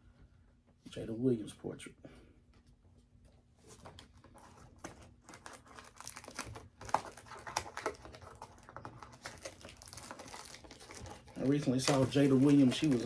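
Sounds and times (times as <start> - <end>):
trading cards and wrapper rustling: 3.7 - 13.0.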